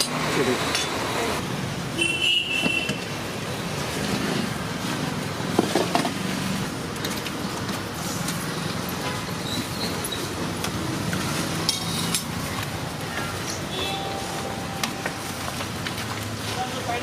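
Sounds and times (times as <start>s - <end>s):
roadside traffic: 0.0s - 17.0s
brief high-pitched tone: 13.7s - 15.8s.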